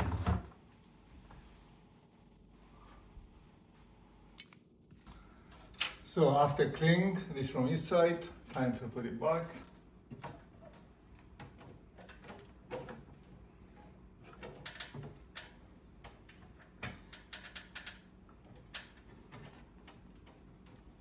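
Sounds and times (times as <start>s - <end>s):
plastic parts clicking and knocking: 10.1s - 20.8s.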